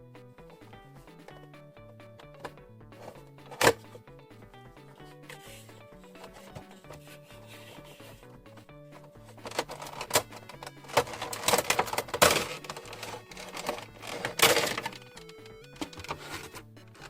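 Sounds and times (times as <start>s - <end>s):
light background music: 0.0s - 17.0s
packaging crackling and clicking: 9.3s - 17.0s.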